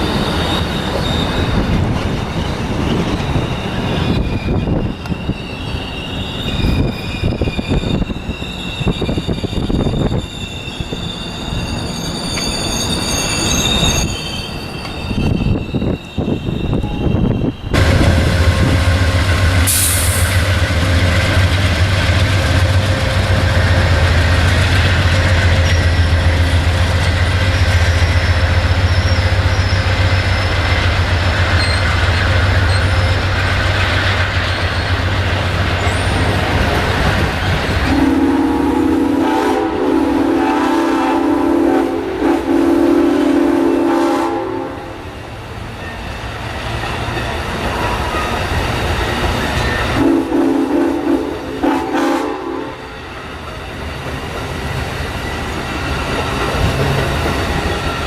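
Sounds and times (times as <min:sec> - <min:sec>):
diesel train engine drone: 0:00.0 - 0:58.0
train air horn chord: 0:37.9 - 0:45.0, 0:50.0 - 0:52.8.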